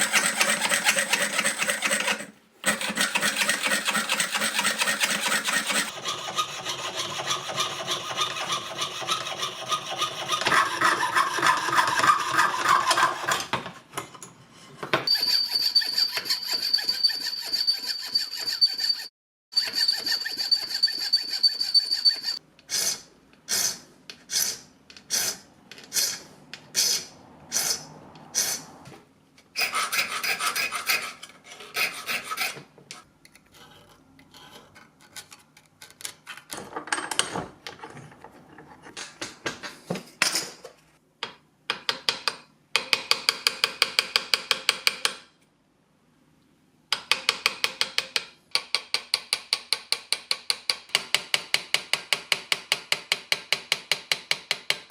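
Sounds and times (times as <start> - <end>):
metal rasping from sawing and filing: 0.0 - 13.5, 15.0 - 26.2, 29.6 - 32.7.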